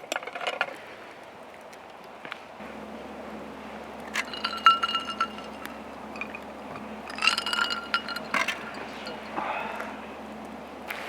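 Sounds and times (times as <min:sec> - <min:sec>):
glass clinking: 0:04.0 - 0:10.1.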